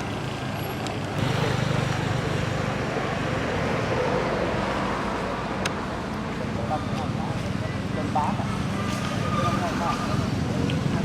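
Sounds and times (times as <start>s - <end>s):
vehicle engine humming: 0.0s - 11.0s.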